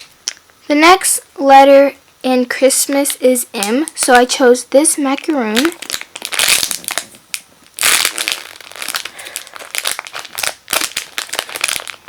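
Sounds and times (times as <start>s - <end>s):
squishy toy crinkling and rustling: 5.4s - 12.0s.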